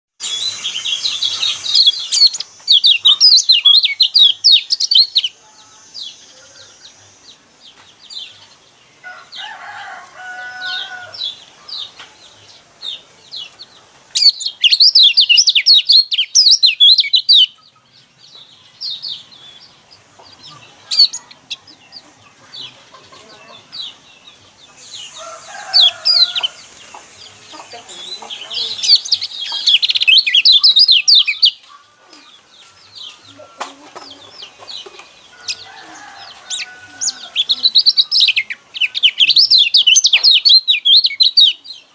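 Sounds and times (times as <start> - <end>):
bird singing high-pitched song: 0.2 - 9.6, 10.4 - 41.9
bird chirps: 0.2 - 41.9
lower-pitched bird call: 24.7 - 32.5.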